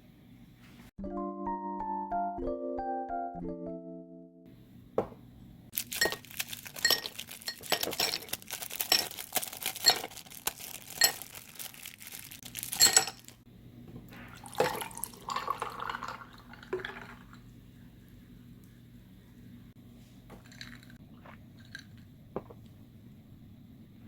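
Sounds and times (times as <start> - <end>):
utensils clinking on glass dishes: 5.8 - 11.4, 12.6 - 13.4.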